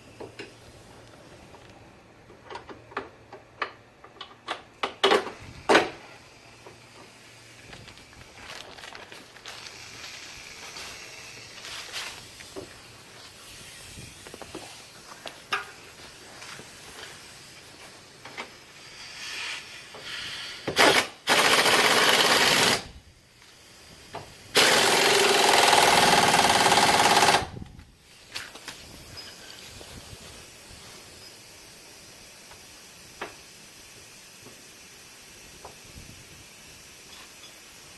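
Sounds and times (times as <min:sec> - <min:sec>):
tool clicks and clinks: 0:09.9 - 0:10.6.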